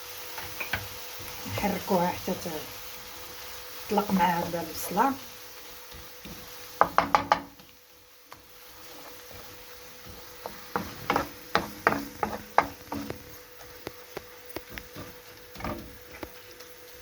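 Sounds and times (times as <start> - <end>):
spoon scraping and knocking pot: 8.9 - 13.7, 14.6 - 16.3.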